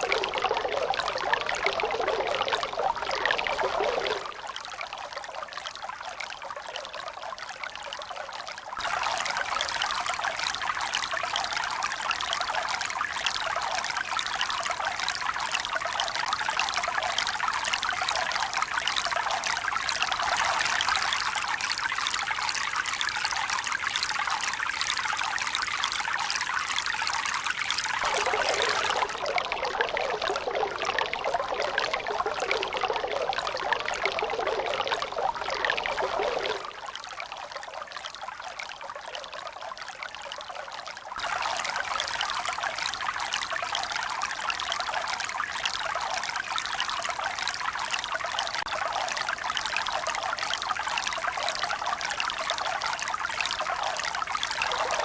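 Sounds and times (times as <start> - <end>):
water rushing and pouring: 8.8 - 37.1, 41.2 - 55.0.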